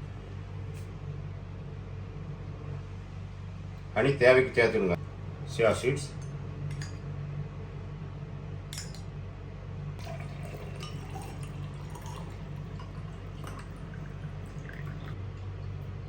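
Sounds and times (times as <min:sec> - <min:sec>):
low hum: 0:00.0 - 0:16.0
glass clink: 0:06.7 - 0:07.0, 0:08.7 - 0:09.1, 0:10.0 - 0:13.8
liquid trickling into a glass: 0:10.0 - 0:15.9.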